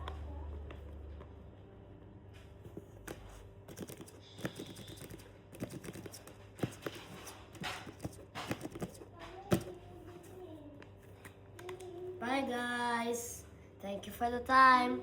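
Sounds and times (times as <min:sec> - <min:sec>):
paper clicker toys clicking: 0:03.7 - 0:09.7.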